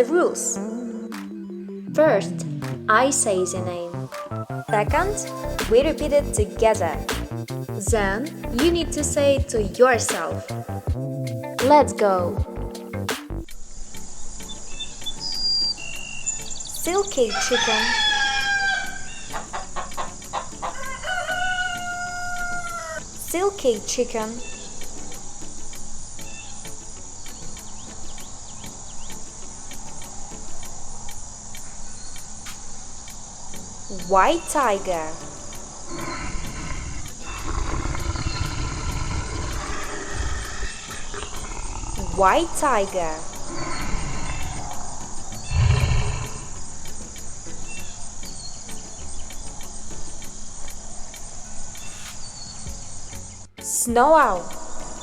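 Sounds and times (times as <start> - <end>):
crickets chirping: 3.2 - 55.0
tiger growling: 35.2 - 47.9.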